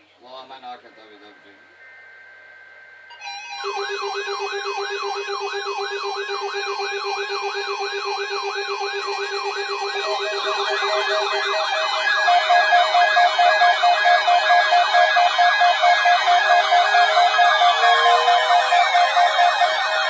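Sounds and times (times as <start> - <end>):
sweeping electronic siren tones: 1.4 - 20.0
beeping tone: 7.2 - 20.0.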